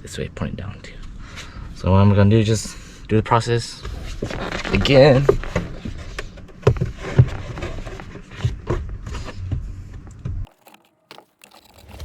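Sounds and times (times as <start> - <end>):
plastic rustling: 3.9 - 8.6, 10.5 - 12.0.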